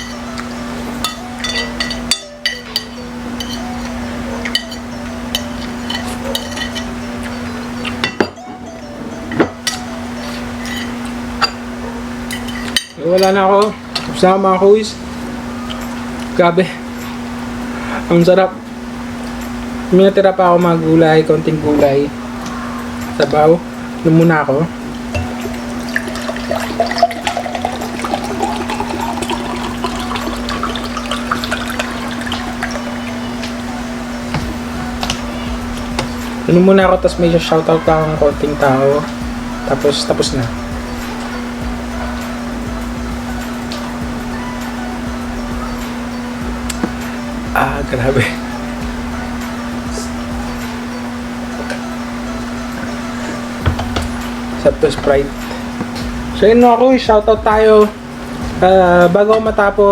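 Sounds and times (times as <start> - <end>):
cutlery clinking against dishes: 0.0 - 8.6, 9.3 - 11.6, 12.3 - 14.2
steady low hum: 0.0 - 59.9.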